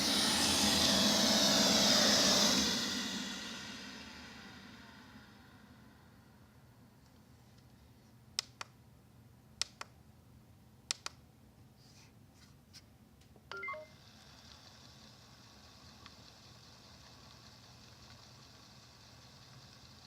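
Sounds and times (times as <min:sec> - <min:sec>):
button clicks: 0:13.5 - 0:13.9
electronic tune of beeps: 0:13.5 - 0:13.9.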